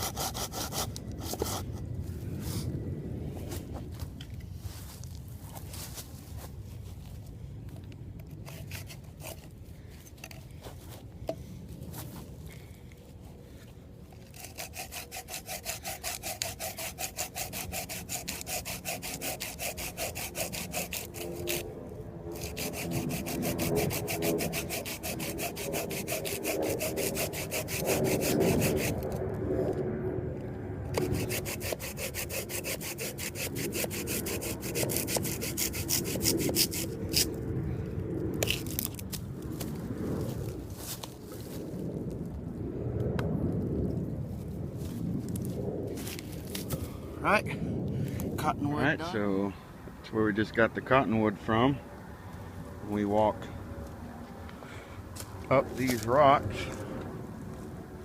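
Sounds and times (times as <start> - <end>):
saw cutting through a branch: 0.0 - 1.8, 8.4 - 9.6, 14.2 - 21.7, 22.3 - 29.2, 30.9 - 37.4, 38.4 - 39.2, 55.2 - 56.8.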